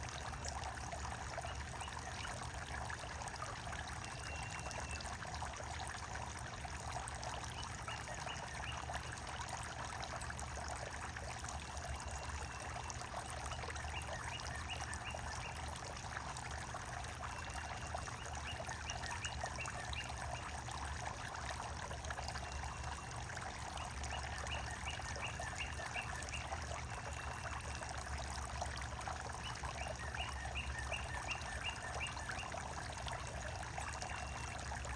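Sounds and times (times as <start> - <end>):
running water trickling: 0.0 - 34.9
bird calling: 29.4 - 32.5.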